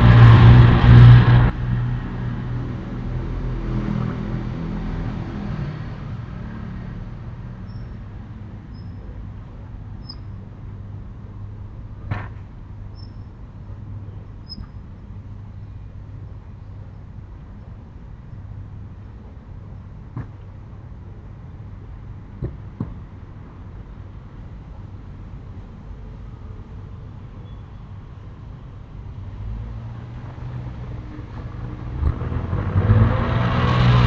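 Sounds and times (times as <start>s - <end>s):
car passing: 0.0s - 8.9s, 28.8s - 34.0s
faint high chirps: 8.7s - 9.0s, 10.0s - 10.4s, 14.4s - 14.9s.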